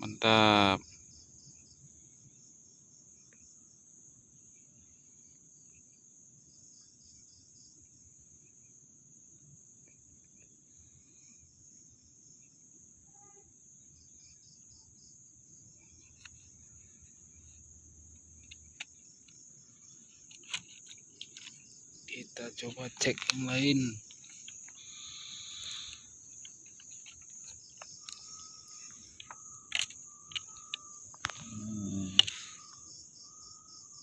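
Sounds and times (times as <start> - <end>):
crickets and insects trilling: 0.0 - 34.0
small clicks: 18.2 - 19.4, 20.1 - 21.6, 22.7 - 32.6.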